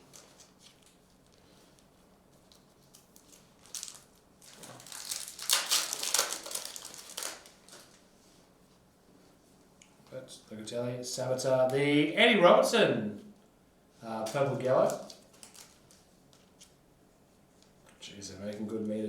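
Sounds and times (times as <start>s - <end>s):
foil wrapper crinkling: 2.5s - 8.0s, 14.3s - 16.8s.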